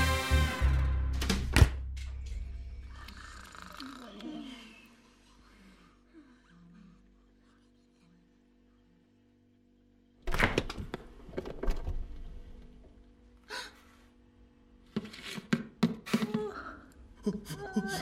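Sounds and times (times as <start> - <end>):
faint low hum: 1.9 - 14.9.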